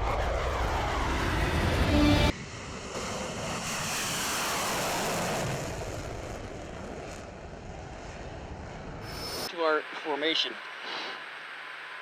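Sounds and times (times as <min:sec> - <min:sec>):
loud jet sound: 0:00.0 - 0:07.4
jet aircraft passing: 0:00.0 - 0:12.0.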